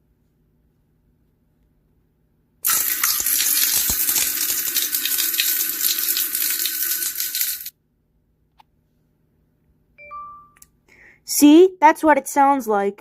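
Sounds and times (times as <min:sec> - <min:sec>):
shower water spraying: 0:02.6 - 0:07.7.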